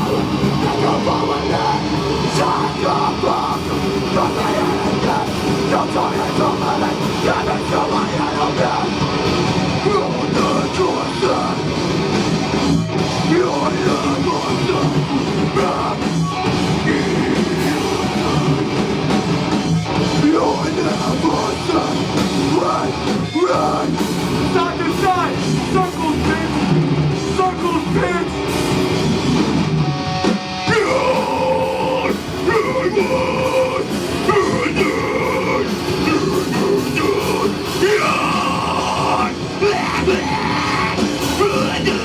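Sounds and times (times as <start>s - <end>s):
shouted vocals: 0.0s - 11.8s, 30.6s - 42.0s
distorted electric guitar: 0.0s - 42.0s
drums: 0.0s - 42.0s.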